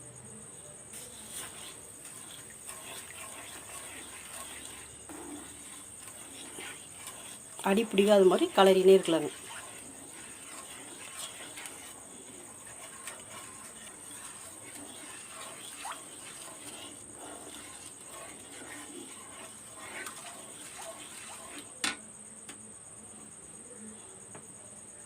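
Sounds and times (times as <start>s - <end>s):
spoon scraping a pan: 0.9s - 22.0s.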